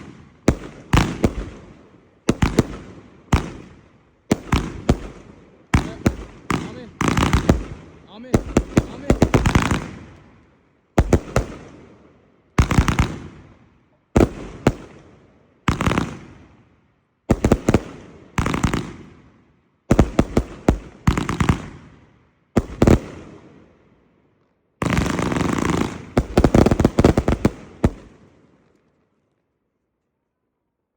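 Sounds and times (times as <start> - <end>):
firework cracks: 4.3 - 10.4, 24.8 - 29.1.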